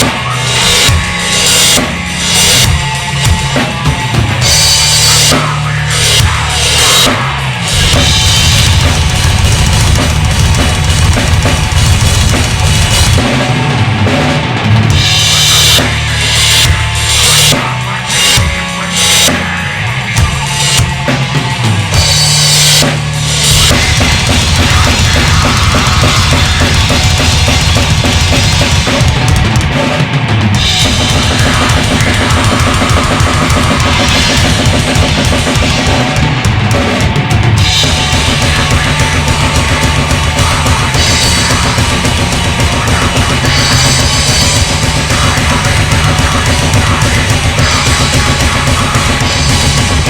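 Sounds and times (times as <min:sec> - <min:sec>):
fast bass drum rhythm: 0:00.0 - 0:50.0
heavy rock song: 0:00.0 - 0:50.0.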